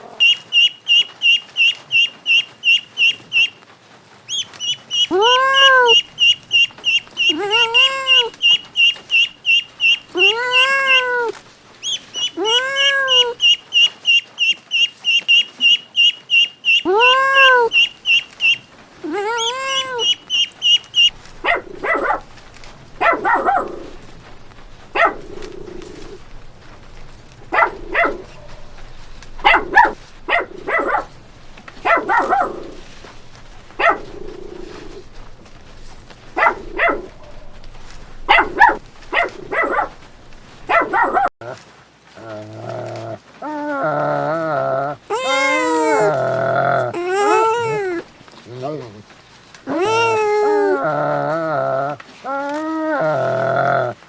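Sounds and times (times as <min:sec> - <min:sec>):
poultry call rising and falling: 0:00.0 - 0:03.6, 0:04.3 - 0:41.2, 0:44.7 - 0:51.2
chicks peeping: 0:00.2 - 0:03.5, 0:04.3 - 0:41.2
dog barking: 0:19.3 - 0:41.3, 0:45.1 - 0:49.0.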